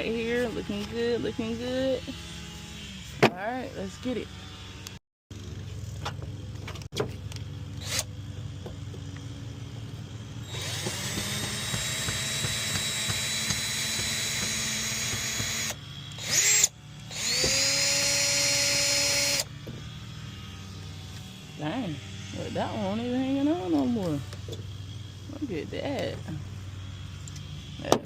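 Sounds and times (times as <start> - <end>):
cordless drill running: 7.7 - 25.1.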